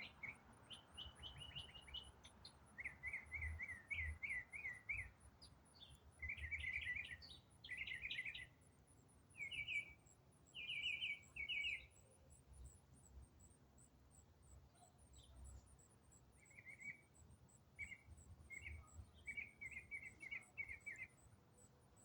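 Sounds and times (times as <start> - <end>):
songbird singing: 0.0 - 22.0.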